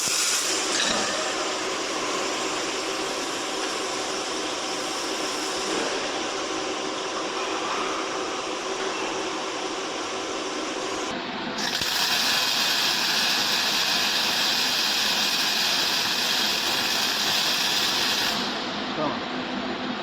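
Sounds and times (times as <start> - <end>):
welding machine running: 0.0 - 5.4, 10.0 - 19.1.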